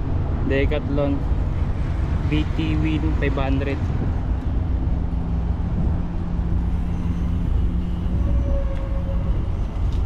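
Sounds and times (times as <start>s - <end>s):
traffic rumble: 0.0s - 10.0s
vehicle engine hum: 0.0s - 10.0s.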